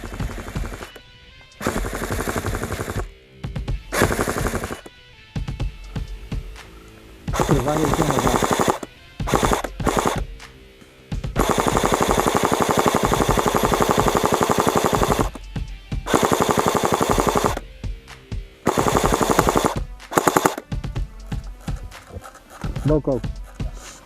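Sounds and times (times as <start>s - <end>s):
airsoft gun automatic bursts: 0.0s - 1.0s, 1.6s - 3.1s, 3.9s - 4.9s, 7.3s - 10.3s, 11.4s - 15.4s, 16.1s - 17.6s, 18.7s - 20.7s.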